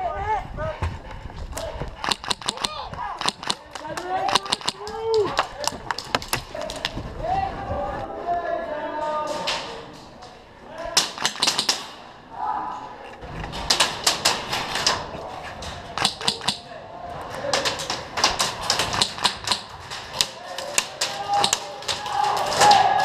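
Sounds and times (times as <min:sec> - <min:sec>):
airsoft guns firing: 0:02.0 - 0:06.6, 0:11.0 - 0:12.1, 0:15.9 - 0:16.7, 0:17.4 - 0:23.0.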